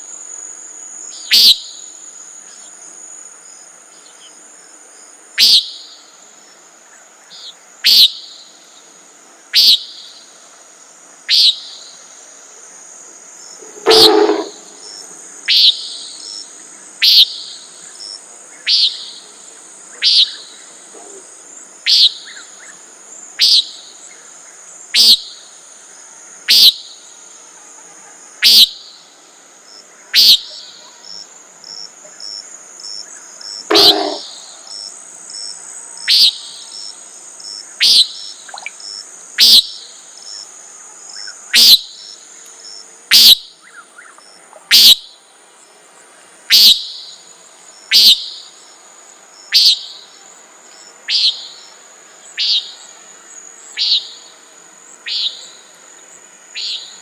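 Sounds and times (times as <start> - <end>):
insects trilling: 0.0 - 57.0
nighthawk peent call: 13.6 - 14.9, 33.7 - 34.6, 43.1 - 43.5, 44.7 - 45.1, 47.9 - 48.5, 51.1 - 51.7, 52.4 - 52.8, 53.8 - 54.2.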